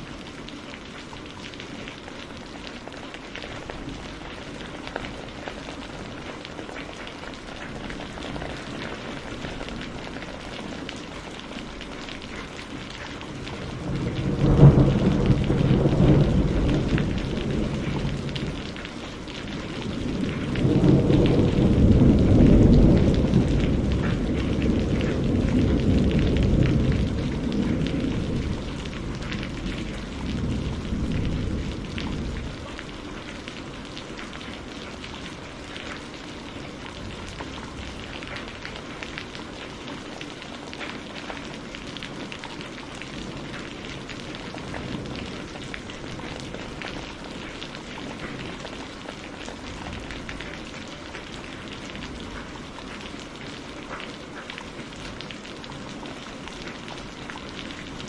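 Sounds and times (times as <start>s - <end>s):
rain pattering: 0.0s - 58.0s
low rumble of thunder: 12.4s - 39.4s, 43.0s - 53.0s.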